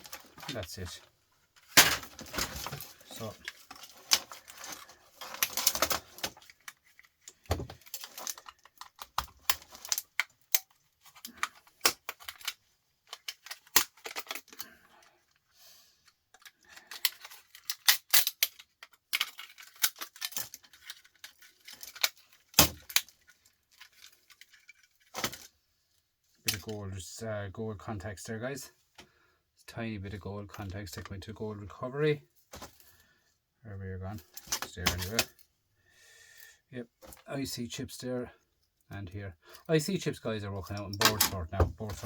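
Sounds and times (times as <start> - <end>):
plastic parts snapping and clicking: 1.6 - 14.7, 16.3 - 25.5, 40.7 - 42.0.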